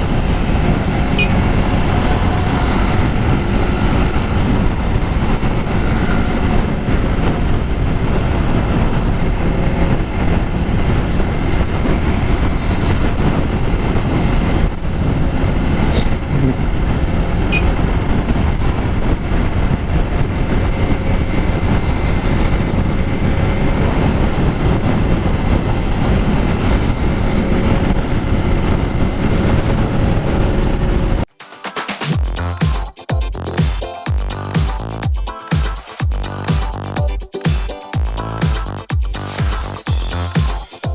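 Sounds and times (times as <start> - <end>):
wind buffeting microphone: 0.0 - 31.2
motorcycle engine running: 37.9 - 40.9.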